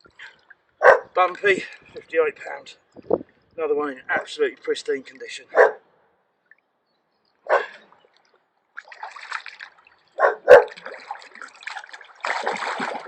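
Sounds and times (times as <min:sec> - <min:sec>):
fish thrashing and splashing water: 0:07.9 - 0:13.0.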